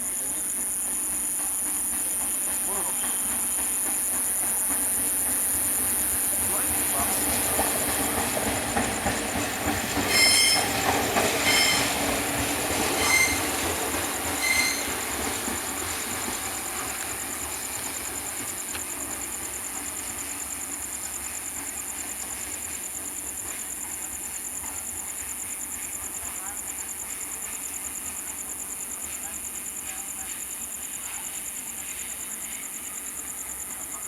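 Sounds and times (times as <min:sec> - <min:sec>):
train wheels squealing: 0:00.0 - 0:29.3
train rolling past: 0:00.0 - 0:34.0.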